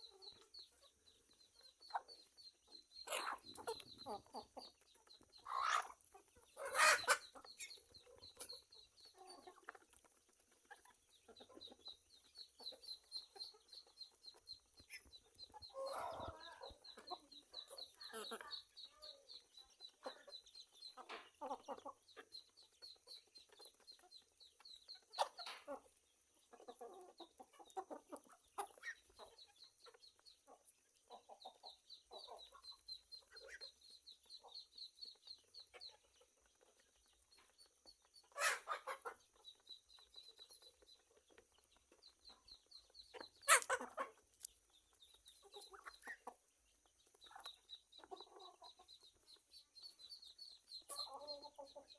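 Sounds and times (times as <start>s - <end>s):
chickens clucking: 0.0s - 51.9s
harsh chicken calls: 5.4s - 7.8s, 38.2s - 39.2s, 43.2s - 44.2s.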